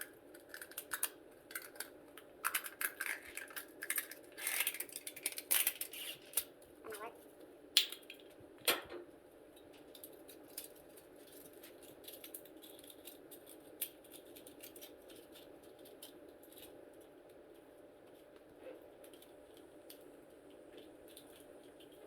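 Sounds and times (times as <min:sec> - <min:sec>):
thin metal crinkling: 0:09.8 - 0:17.1.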